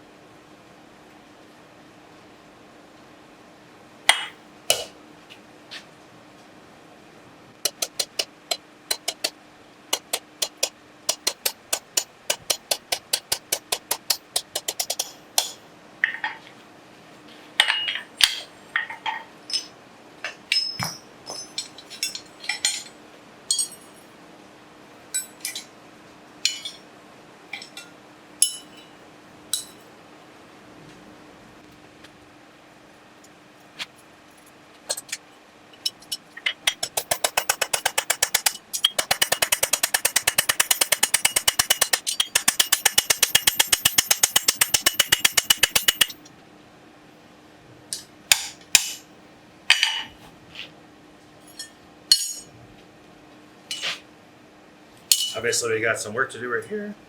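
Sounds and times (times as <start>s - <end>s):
hammer striking steel: 7.6s - 9.3s, 9.9s - 15.6s, 35.9s - 46.3s, 52.1s - 52.5s.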